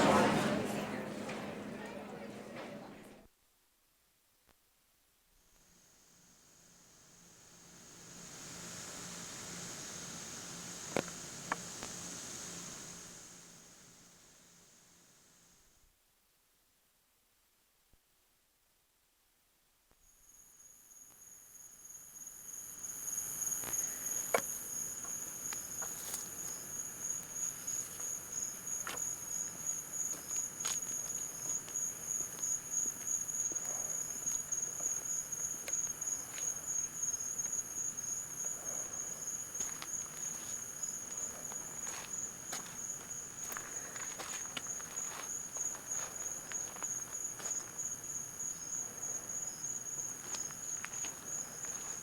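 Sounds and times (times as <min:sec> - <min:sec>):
insects trilling: 0:20.1 - 0:52.0.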